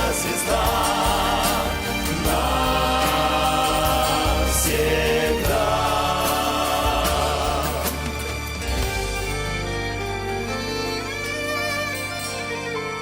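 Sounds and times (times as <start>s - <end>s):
choir singing held notes: 0.0s - 8.6s
instrumental backing: 0.0s - 13.0s.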